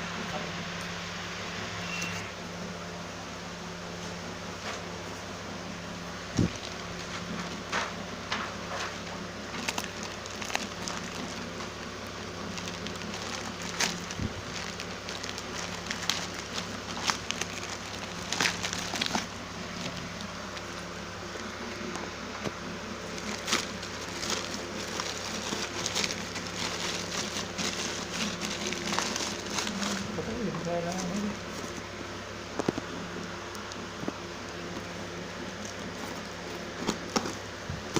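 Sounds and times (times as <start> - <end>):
background hum: 0.0 - 37.9
packaging crackling: 6.2 - 32.9.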